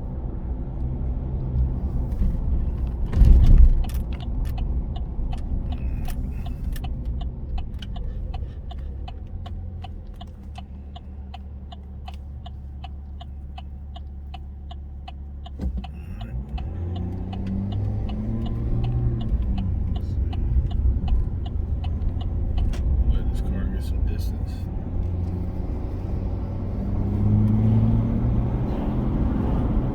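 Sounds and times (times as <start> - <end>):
diesel engine running: 0.0 - 29.9
steady engine ticking: 3.6 - 25.7.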